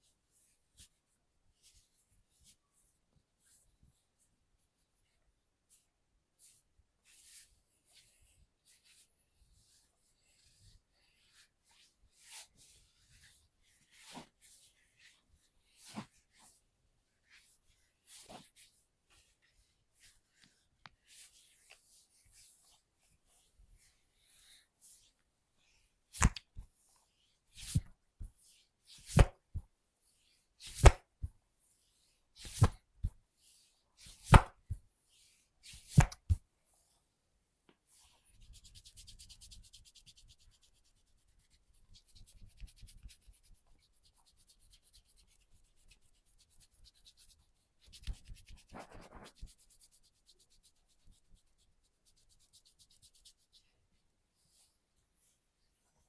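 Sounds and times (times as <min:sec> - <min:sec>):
hands rubbing skin: 0:17.2 - 0:26.9, 0:27.5 - 0:29.7, 0:30.6 - 0:31.4, 0:32.4 - 0:34.9, 0:35.6 - 0:36.4, 0:38.2 - 0:53.7
sharp slaps on body: 0:26.2 - 0:26.6, 0:29.1 - 0:29.4, 0:30.6 - 0:31.3, 0:32.4 - 0:32.8, 0:34.2 - 0:34.8, 0:35.9 - 0:36.4.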